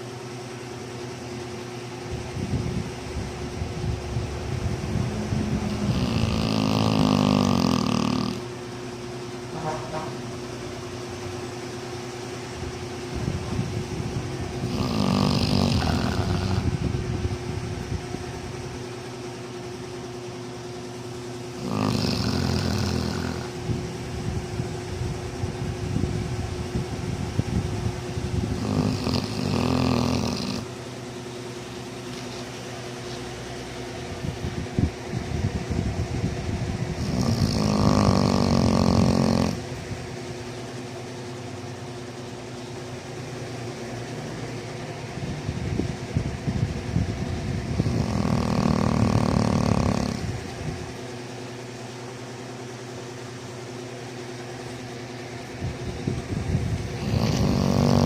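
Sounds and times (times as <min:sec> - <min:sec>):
steady background hum: 0:00.0 - 0:58.0
dog snoring: 0:04.7 - 0:08.5, 0:14.5 - 0:16.9, 0:21.5 - 0:23.7, 0:28.4 - 0:30.7, 0:36.9 - 0:39.8, 0:47.6 - 0:50.5, 0:56.8 - 0:58.0.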